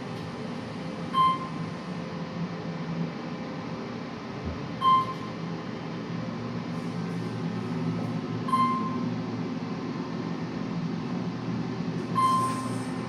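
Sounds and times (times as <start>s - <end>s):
elevator chime beeps: 1.1s - 1.7s, 4.8s - 5.3s, 8.4s - 9.0s, 12.1s - 12.8s.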